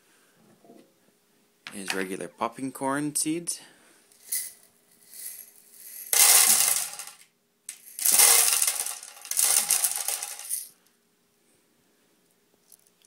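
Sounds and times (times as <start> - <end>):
popcorn kernels rattling into grinder: 4.3 - 10.7.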